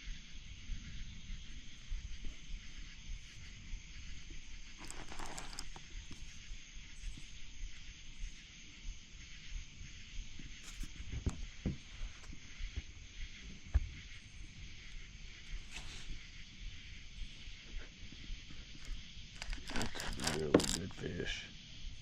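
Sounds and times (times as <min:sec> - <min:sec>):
wind rumble on microphone: 0:00.0 - 0:04.9
steady hiss: 0:00.0 - 0:22.0.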